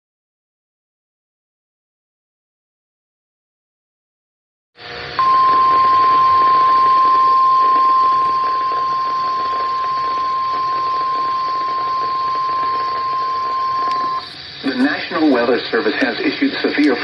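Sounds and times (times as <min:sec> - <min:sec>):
steady alarm tone: 0:04.8 - 0:16.5
radio static: 0:05.2 - 0:17.0.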